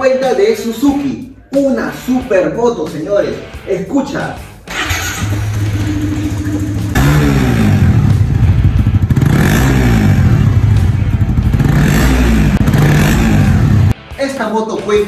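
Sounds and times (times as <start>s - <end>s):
motorcycle engine revving over idle: 4.7s - 14.0s.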